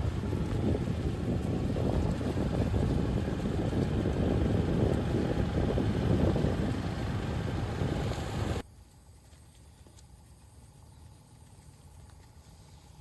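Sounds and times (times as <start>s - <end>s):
wind buffeting microphone: 0.0s - 8.6s.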